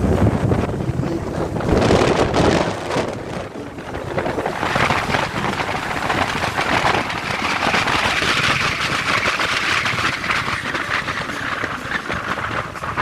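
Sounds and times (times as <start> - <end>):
vehicle driving on sand: 0.0 - 13.0.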